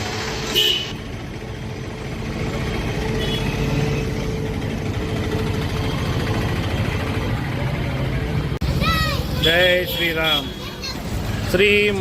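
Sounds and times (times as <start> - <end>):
engine running steadily: 0.0 - 8.6.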